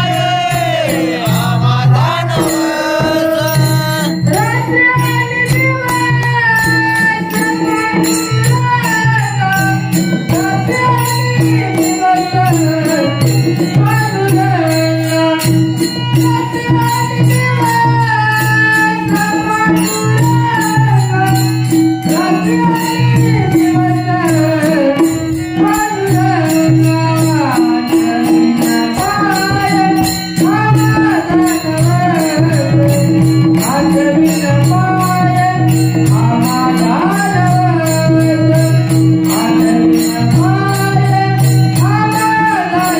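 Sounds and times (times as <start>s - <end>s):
harmonium drone: 0.0s - 42.9s
man singing: 0.0s - 42.9s
small metallic percussion ticking: 0.0s - 42.9s.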